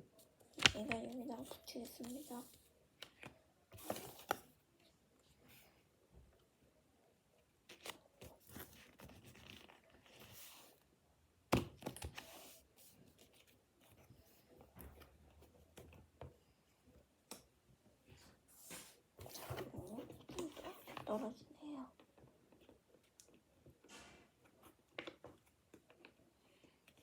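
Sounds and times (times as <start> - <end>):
paper rustling and crinkling: 7.6 - 10.8.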